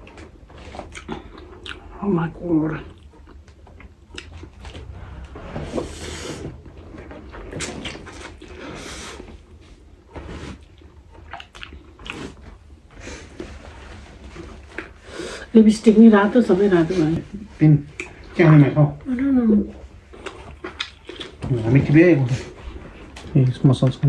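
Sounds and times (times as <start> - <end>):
low steady hum: 0.0 - 24.0
mouth eating sounds: 0.8 - 2.0.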